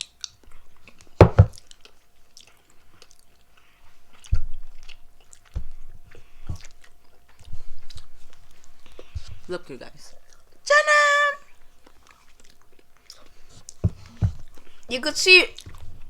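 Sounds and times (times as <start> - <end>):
chewing chocolate: 0.0 - 10.7, 11.5 - 16.0
dull knocks on table: 1.2 - 1.6.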